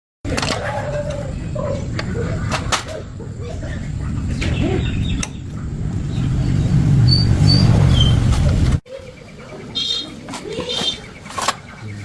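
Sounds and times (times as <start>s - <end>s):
motorcycle engine rumble: 0.3s - 8.8s.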